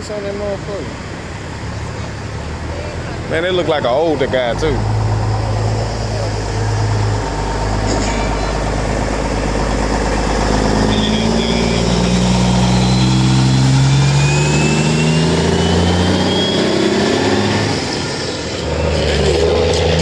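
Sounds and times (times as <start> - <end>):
car engine accelerating: 0.7 - 20.0
faint rising whine: 8.8 - 19.7.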